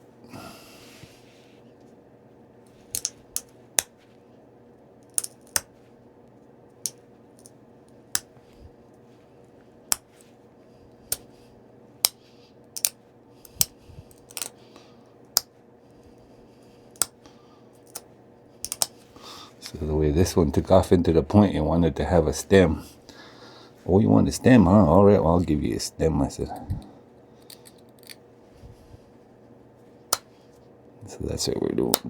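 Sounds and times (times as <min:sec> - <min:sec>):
flint knapping clicks: 0:02.9 - 0:03.9, 0:05.0 - 0:05.7, 0:09.9 - 0:10.2, 0:11.1 - 0:11.3, 0:12.0 - 0:14.6, 0:16.9 - 0:17.2, 0:17.8 - 0:18.0, 0:18.6 - 0:19.0, 0:27.4 - 0:28.2, 0:30.1 - 0:30.3.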